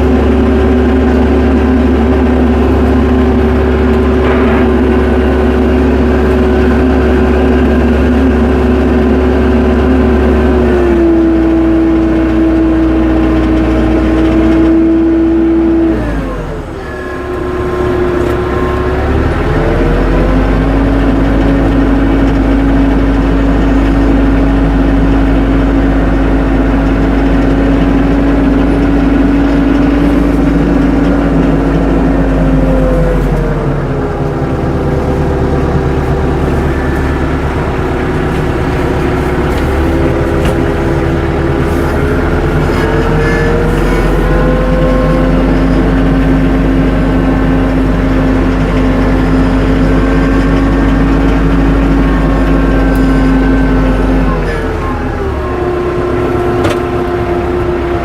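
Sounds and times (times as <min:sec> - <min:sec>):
tractor engine running: 0:00.0 - 0:58.0.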